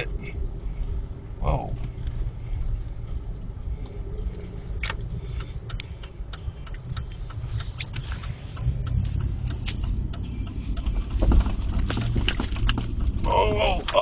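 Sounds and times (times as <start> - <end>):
engine and tyres rumbling: 0.0 - 14.0
sharp clicks and ticks: 3.8 - 14.0.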